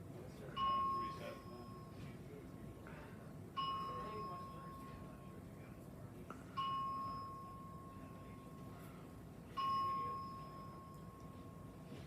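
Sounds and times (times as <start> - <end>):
fire alarm bell chiming: 0.5 - 2.1, 3.5 - 5.3, 6.5 - 12.0.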